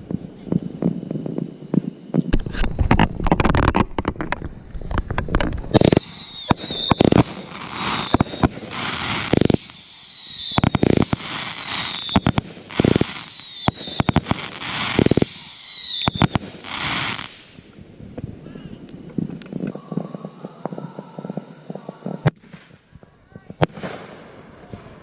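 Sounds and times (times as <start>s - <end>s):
firework bangs and crackling: 0.0s - 25.0s
whistling firework shots: 5.7s - 17.7s, 19.7s - 25.0s.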